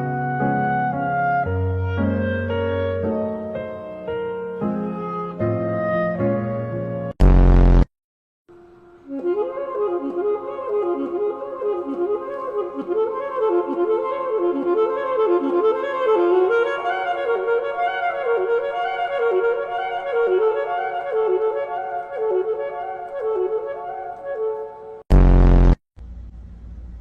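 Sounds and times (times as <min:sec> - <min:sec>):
woodwind looping melody: 0:09.1 - 0:25.0.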